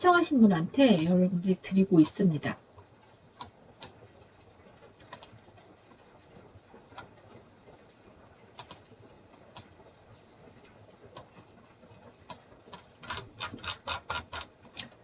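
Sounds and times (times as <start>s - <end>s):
computer mouse clicks: 3.4s - 4.0s, 5.1s - 5.3s, 8.6s - 8.8s.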